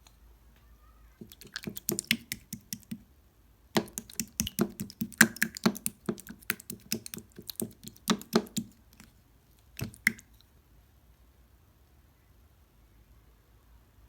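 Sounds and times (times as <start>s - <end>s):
slime squishing wet pops: 1.2s - 3.0s, 3.8s - 10.4s.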